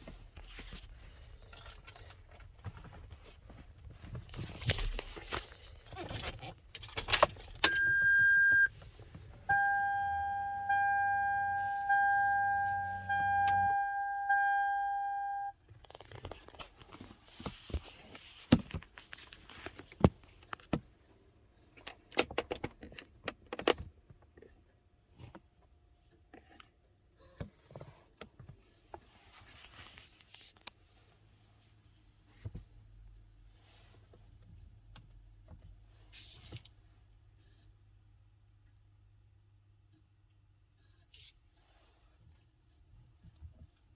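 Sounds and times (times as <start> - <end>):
handling clicks and rattling: 1.4 - 8.7
electronic chime: 7.6 - 8.7, 9.5 - 15.5.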